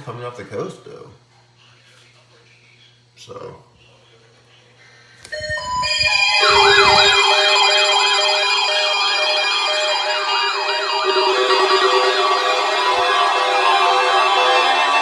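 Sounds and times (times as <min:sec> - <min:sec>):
siren warbling: 0:05.3 - 0:15.0
sustained synthesizer-like tones: 0:05.3 - 0:15.0.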